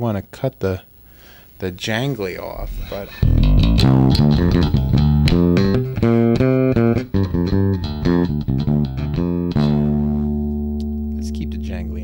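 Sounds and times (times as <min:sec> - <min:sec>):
plucked electric bassline: 0:02.5 - 0:12.0.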